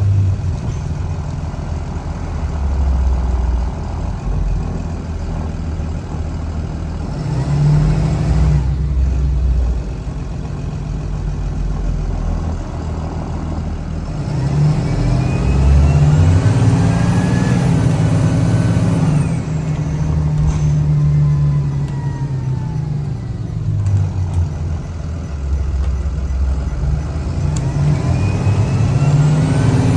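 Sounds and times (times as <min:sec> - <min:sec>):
bus engine pulling away: 0:00.0 - 0:29.9
engine whine rising in pitch: 0:14.1 - 0:29.9.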